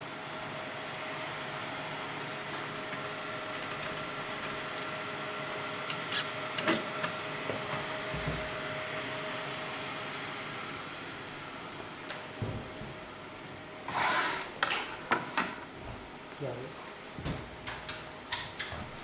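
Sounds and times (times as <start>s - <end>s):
printer fans and motors humming: 0.0s - 19.0s.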